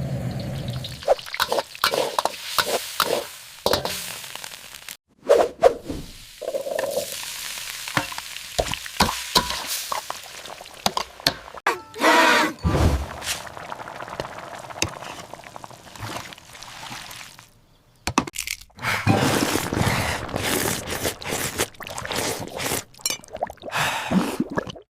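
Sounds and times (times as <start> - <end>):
liquid sloshing and pouring: 0.4 - 2.5, 12.6 - 17.5, 18.4 - 24.9.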